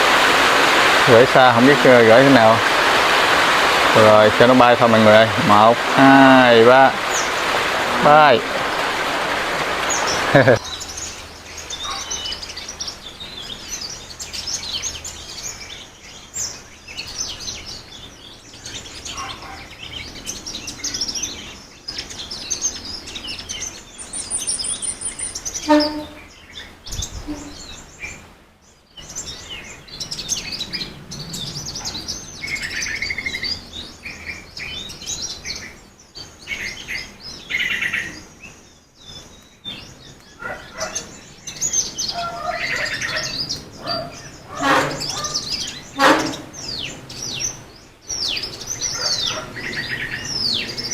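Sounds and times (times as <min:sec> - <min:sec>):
small birds chirping: 0:00.0 - 0:50.9.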